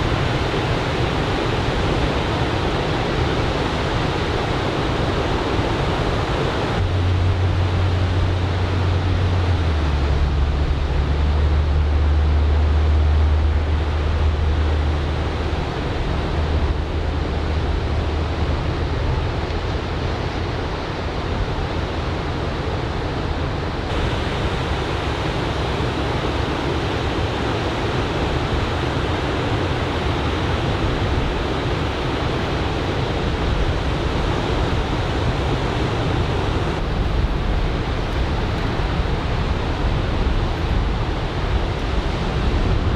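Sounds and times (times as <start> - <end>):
ocean waves breaking on beach: 0.0 - 42.9
low steady hum: 6.3 - 42.9.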